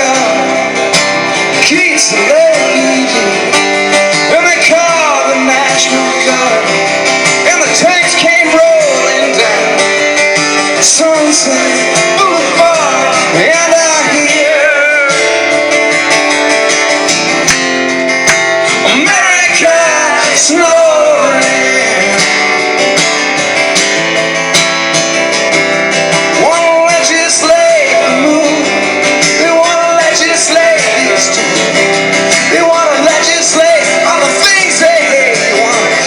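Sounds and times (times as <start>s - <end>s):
person singing: 0.0s - 10.1s, 10.7s - 15.4s, 18.3s - 22.7s, 26.4s - 36.0s
acoustic guitar strumming: 0.0s - 36.0s.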